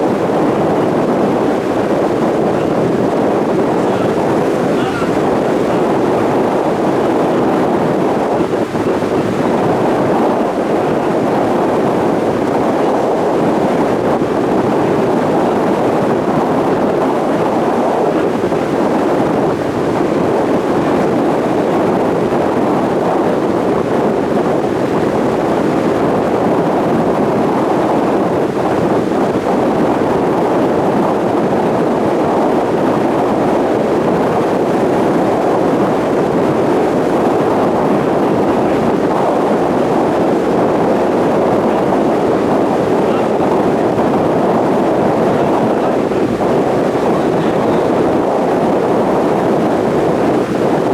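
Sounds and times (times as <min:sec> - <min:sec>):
water rushing past: 0:00.0 - 0:17.6
boat engine hum: 0:00.0 - 0:50.9
wind buffeting microphone: 0:00.0 - 0:50.9.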